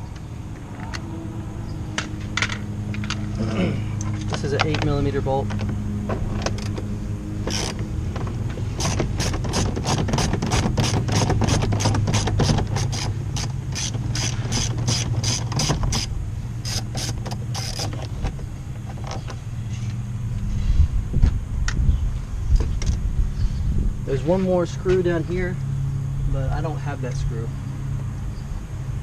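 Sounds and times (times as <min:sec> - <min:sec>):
steady low hum: 0:00.0 - 0:29.0
socket ratchet clicking: 0:07.5 - 0:07.8, 0:08.8 - 0:18.1.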